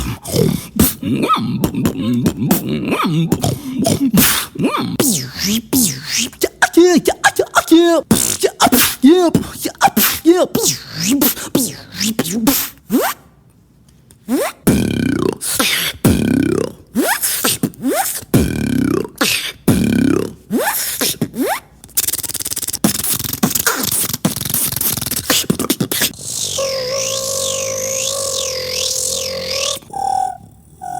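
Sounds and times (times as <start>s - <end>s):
fast mouth clicking rattle: 21.8s - 26.4s
vocal calls bending down in pitch: 26.1s - 30.9s.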